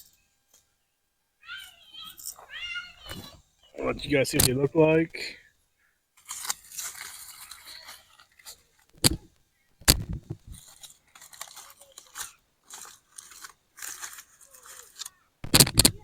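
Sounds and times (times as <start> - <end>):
rustling and scraping handling: 1.5 - 5.3, 6.2 - 16.0
sharp knocks: 9.0 - 10.6, 15.4 - 16.0.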